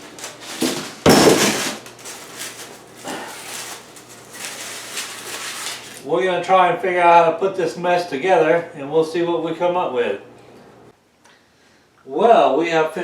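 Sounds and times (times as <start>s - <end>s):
furniture parts scraping and knocking: 0.0s - 3.8s
packaging rustling clatter: 0.0s - 6.0s.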